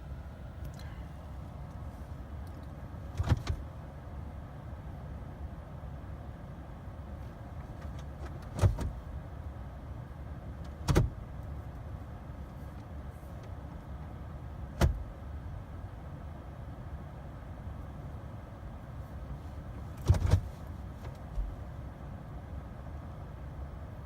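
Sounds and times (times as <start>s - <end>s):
low steady hum: 0.0s - 24.0s
sharp clunks inside car: 3.1s - 3.6s, 7.7s - 9.0s, 10.6s - 11.2s, 14.8s - 15.0s, 19.9s - 21.7s.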